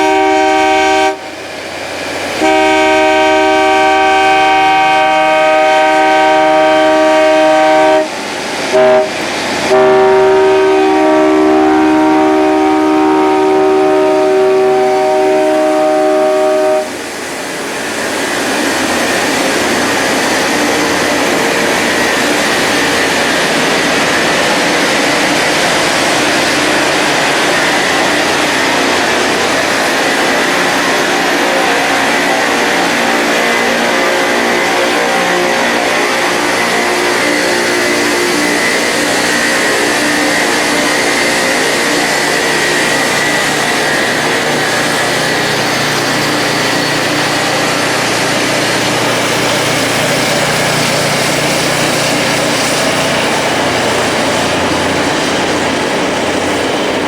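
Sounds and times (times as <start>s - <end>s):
train horn blasts: 0.0s - 1.4s, 2.4s - 17.1s, 26.9s - 45.4s
train passing rushing noise: 0.0s - 57.0s.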